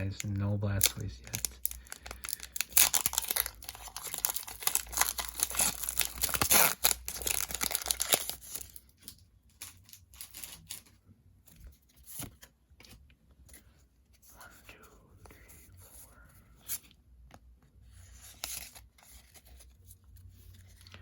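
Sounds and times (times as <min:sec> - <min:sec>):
foil pack tearing and crinkling: 0:00.8 - 0:08.7.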